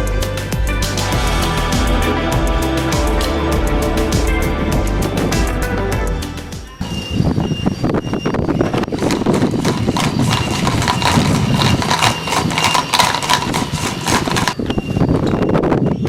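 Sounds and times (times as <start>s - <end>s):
gear motor clattering: 8.6s - 14.8s.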